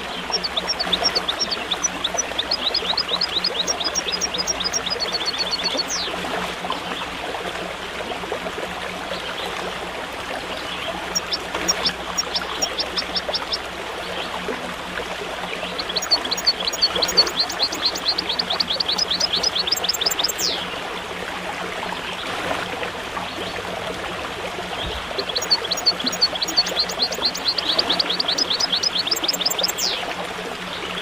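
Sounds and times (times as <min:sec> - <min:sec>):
small bird chirping: 0:00.0 - 0:06.1, 0:11.1 - 0:13.6, 0:15.8 - 0:20.6, 0:25.2 - 0:30.0
stream water rushing: 0:00.0 - 0:31.0.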